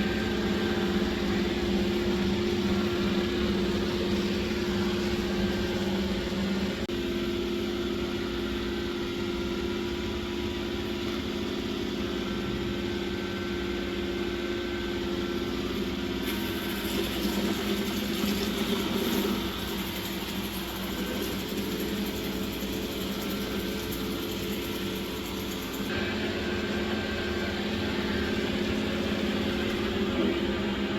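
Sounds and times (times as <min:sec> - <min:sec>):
robot vacuum running: 0:00.0 - 0:07.0, 0:14.4 - 0:30.9.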